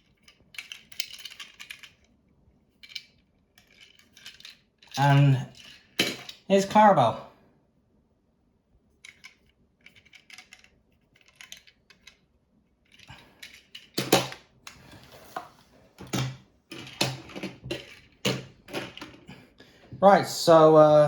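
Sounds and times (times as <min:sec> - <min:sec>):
plastic toy pieces clicking: 0:00.0 - 0:02.1, 0:02.8 - 0:06.4, 0:09.0 - 0:12.2, 0:12.9 - 0:14.4
plastic pieces knocking: 0:13.6 - 0:14.4, 0:16.0 - 0:19.3.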